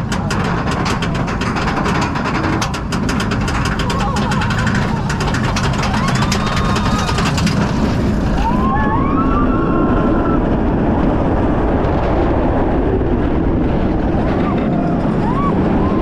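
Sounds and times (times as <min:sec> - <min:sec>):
fast clicking: 0:00.0 - 0:08.4
roller coaster rumble: 0:00.0 - 0:16.0.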